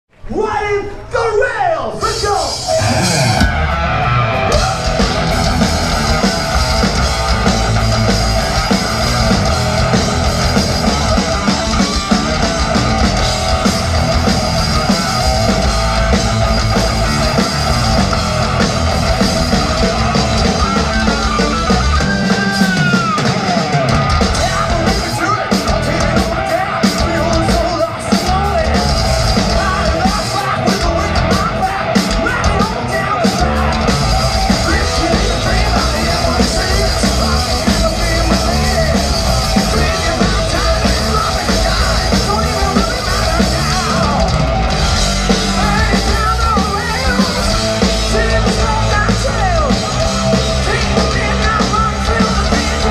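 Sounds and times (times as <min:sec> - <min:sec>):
drum kit: 0:01.8 - 0:52.9
electric guitar: 0:02.5 - 0:52.9
person singing: 0:19.6 - 0:44.5, 0:45.2 - 0:52.9.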